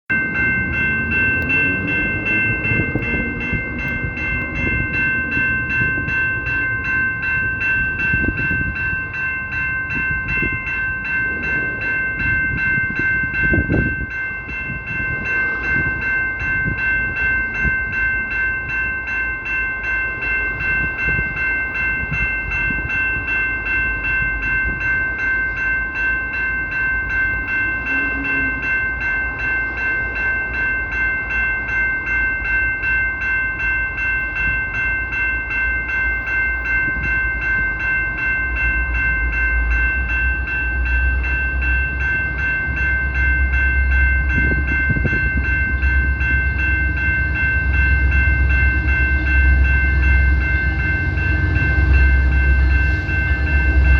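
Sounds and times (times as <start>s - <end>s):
pulsing locomotive horn chord: 0.1s - 17.1s, 27.4s - 29.7s, 39.4s - 53.9s
train rumble: 0.1s - 53.9s.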